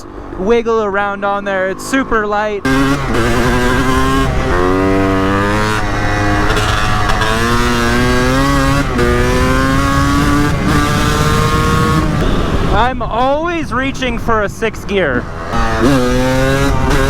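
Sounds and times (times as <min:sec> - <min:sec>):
motorcycle engine accelerating: 0:02.6 - 0:13.0, 0:14.9 - 0:17.0.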